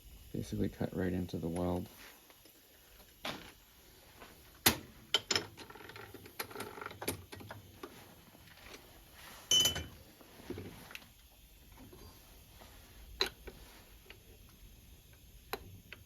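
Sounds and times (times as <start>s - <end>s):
metal tools clicking and knocking: 5.1s - 7.6s, 9.5s - 10.0s
metallic clank with ring: 9.5s - 10.0s.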